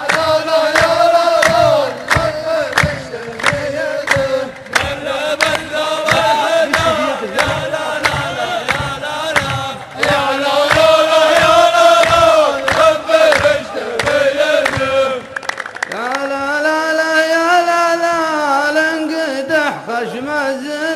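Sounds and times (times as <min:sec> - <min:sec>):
beat of sharp strikes: 0:00.0 - 0:15.2
men's chorus chanting in unison: 0:00.0 - 0:20.9.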